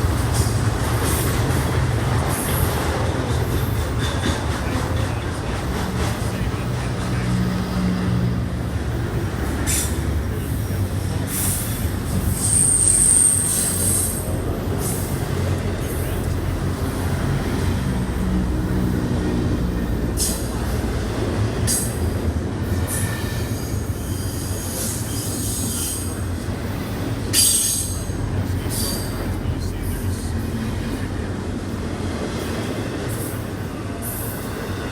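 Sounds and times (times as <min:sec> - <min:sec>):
train wheels rumbling on rail: 0:00.0 - 0:34.9
high-pitched wheel squeals: 0:12.3 - 0:14.3.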